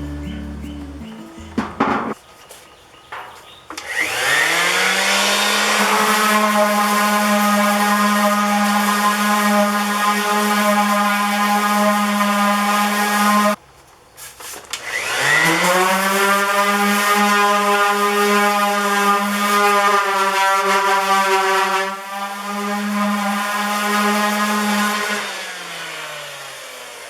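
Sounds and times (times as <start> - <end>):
power tool motor whining: 3.8 - 13.6.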